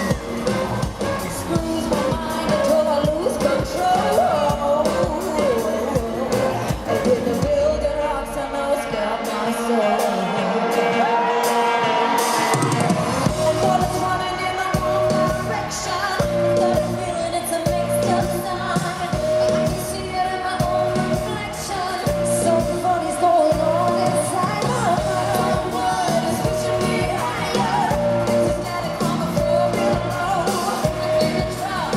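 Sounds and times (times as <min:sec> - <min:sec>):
live pop band playing: 0:00.0 - 0:31.9
female group singing: 0:13.3 - 0:31.9.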